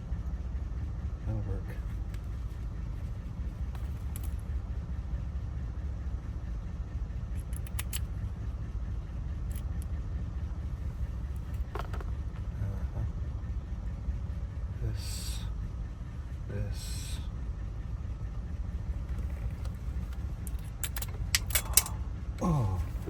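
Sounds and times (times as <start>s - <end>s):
steady low rumble: 0.0s - 23.0s
clicks of small metal lock parts: 7.4s - 8.1s, 9.5s - 9.9s, 20.4s - 21.9s.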